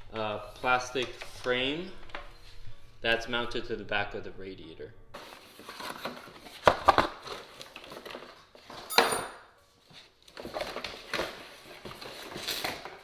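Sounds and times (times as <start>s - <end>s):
metal tools clinking and knocking: 8.9s - 9.5s
sharp ringing metal clink: 8.9s - 9.5s.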